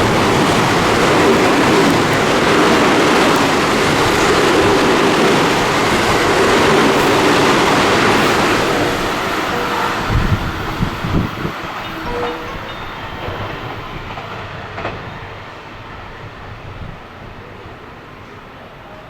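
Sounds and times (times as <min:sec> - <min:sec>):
wheels clacking over rail joints: 0:00.0 - 0:16.2
train passing at speed: 0:00.0 - 0:19.0.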